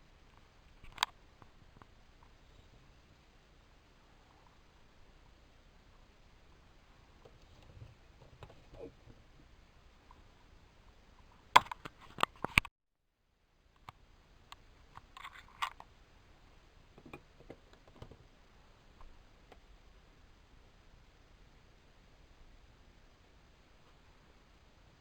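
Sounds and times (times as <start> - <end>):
faint clicks and rustles: 0.1 - 12.7, 13.8 - 16.0.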